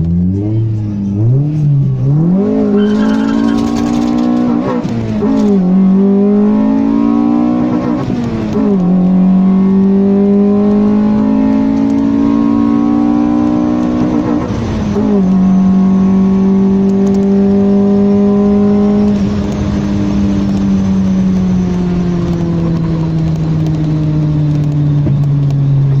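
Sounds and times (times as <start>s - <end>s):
car engine accelerating through gears: 0.0s - 26.0s.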